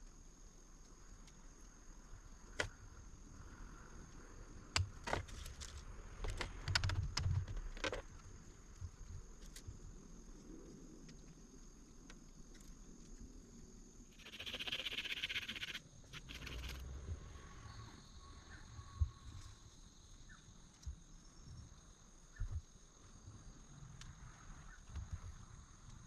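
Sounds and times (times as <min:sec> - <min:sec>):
high-pitched insect drone: 0:14.1 - 0:20.5.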